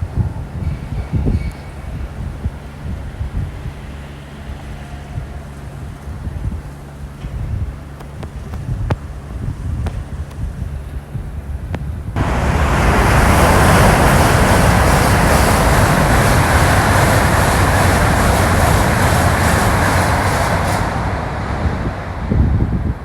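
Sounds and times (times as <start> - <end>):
high-speed train passing: 10.8 - 23.0.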